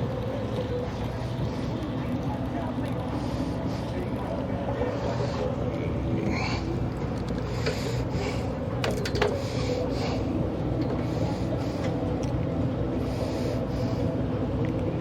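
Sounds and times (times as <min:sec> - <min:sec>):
boat engine humming: 0:00.0 - 0:15.0.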